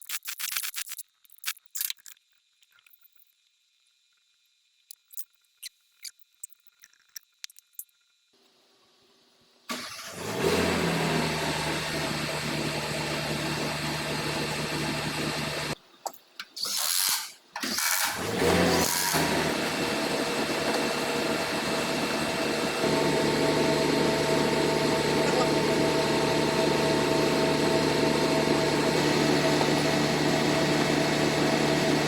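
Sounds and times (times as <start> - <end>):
diesel engine running: 9.7 - 15.8, 18.2 - 32.0.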